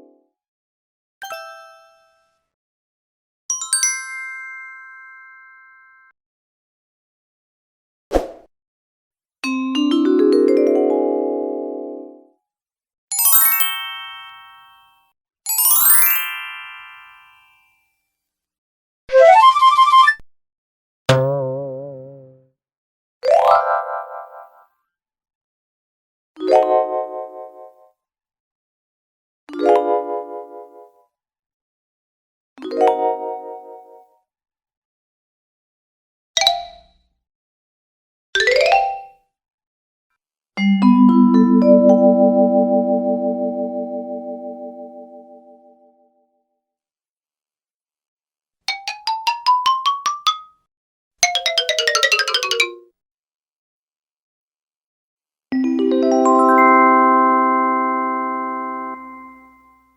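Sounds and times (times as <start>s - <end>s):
bell-like mallet percussion: 40.6s - 44.6s, 48.9s - 50.6s, 51.2s - 52.8s
xylophone jingle: 40.6s - 45.4s, 48.9s - 50.6s, 51.2s - 52.8s.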